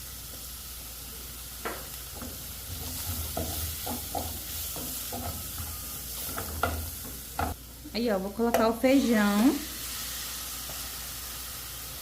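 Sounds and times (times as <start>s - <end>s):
food sizzling in a pan: 0.0s - 12.0s
spoon scraping a pan: 2.2s - 7.6s.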